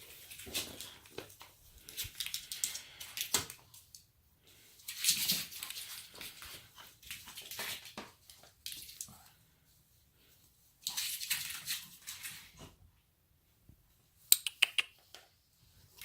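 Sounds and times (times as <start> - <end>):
puppy scratching and rustling: 10.8 - 12.8.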